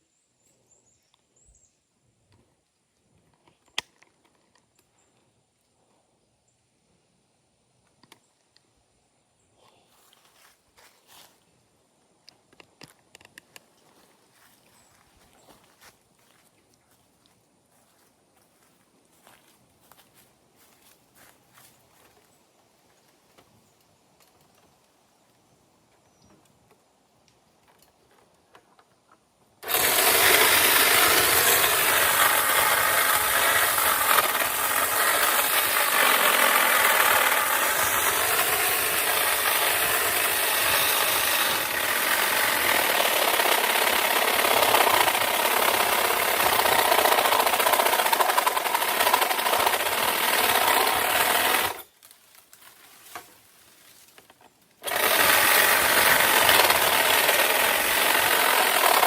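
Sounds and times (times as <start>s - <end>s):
small motorised saw running: 29.6s - 51.9s, 54.8s - 59.0s.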